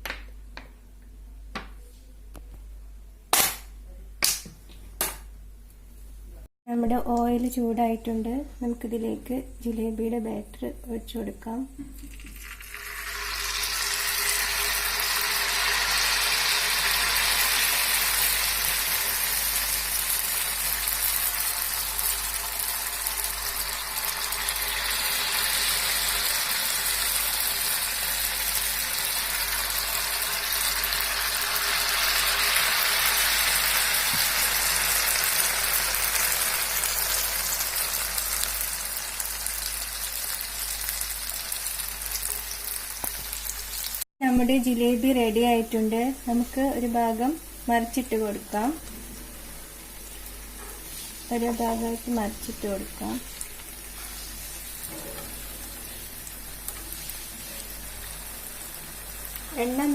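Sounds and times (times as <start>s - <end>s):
batter sizzling in hot oil: 12.2s - 59.9s.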